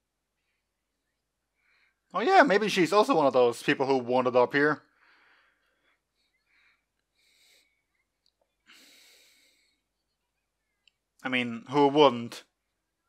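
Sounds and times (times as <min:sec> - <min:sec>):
faint breaths: 0:01.5 - 0:02.1, 0:04.8 - 0:10.8.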